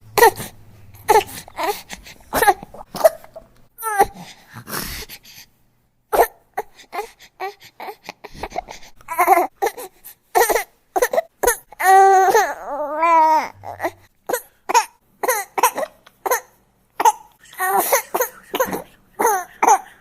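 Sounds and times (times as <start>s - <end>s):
newborn baby crying: 0.2s - 2.7s, 6.1s - 20.0s.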